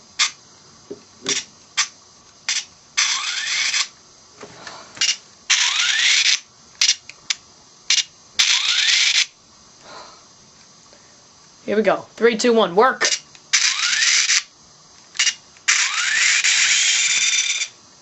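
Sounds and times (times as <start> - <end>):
hissing with rising whine: 13.4 - 17.8.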